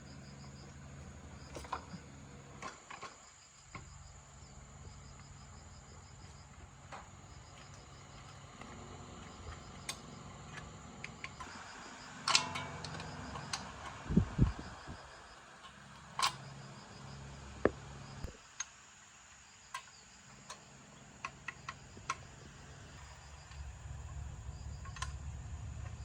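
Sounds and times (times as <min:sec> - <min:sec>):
high chirping cricket: 0:00.0 - 0:26.0
steady low hum: 0:00.0 - 0:26.0
metallic clicks and clinks of tools: 0:12.2 - 0:14.0.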